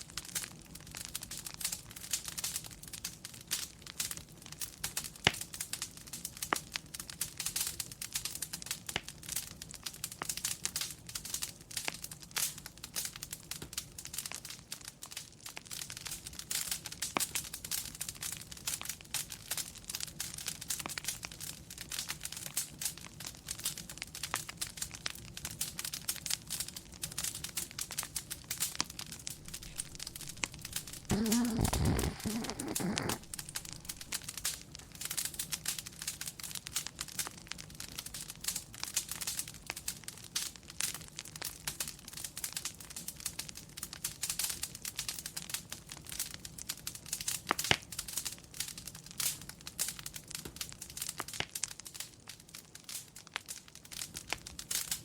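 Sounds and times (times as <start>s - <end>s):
wood fire crackling: 0.0s - 55.0s
dog snoring: 29.4s - 34.1s.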